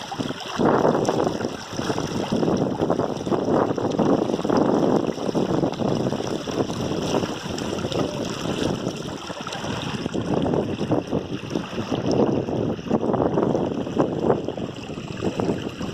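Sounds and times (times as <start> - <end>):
river water rushing: 5.4 - 12.2.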